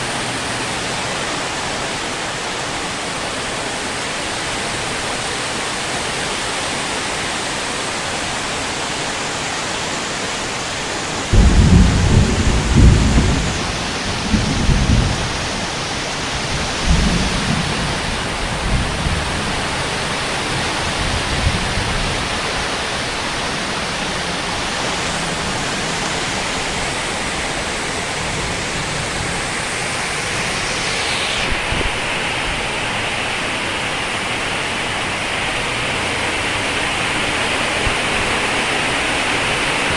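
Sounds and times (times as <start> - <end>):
heavy rain pouring: 0.0 - 39.9
thunder rumbling: 11.1 - 36.8.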